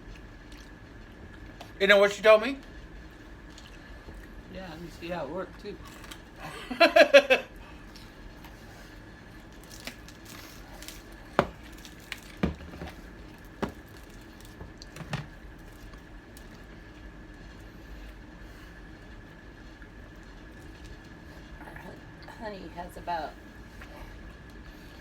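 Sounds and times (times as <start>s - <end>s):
faint steady hum: 0.0s - 25.0s
clicks and taps of handling food: 11.3s - 16.5s.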